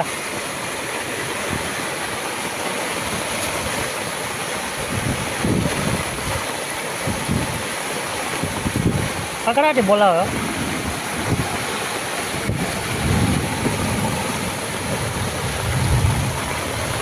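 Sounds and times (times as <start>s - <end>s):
heavy rain pouring: 0.0s - 17.0s
wind buffeting microphone: 4.7s - 9.4s, 10.2s - 17.0s.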